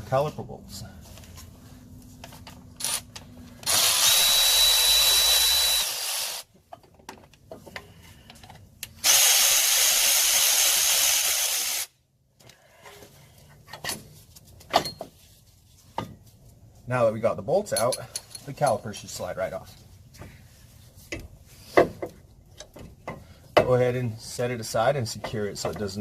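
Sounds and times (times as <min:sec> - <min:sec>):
power tool removing bolts: 0:02.8 - 0:06.5, 0:09.0 - 0:11.9.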